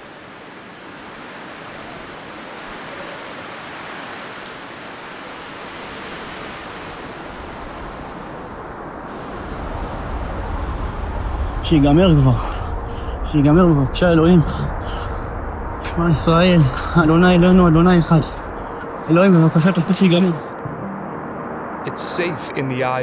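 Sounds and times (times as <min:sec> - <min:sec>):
steady rushing noise: 0:05.0 - 0:20.6
deep rumble: 0:09.0 - 0:20.8.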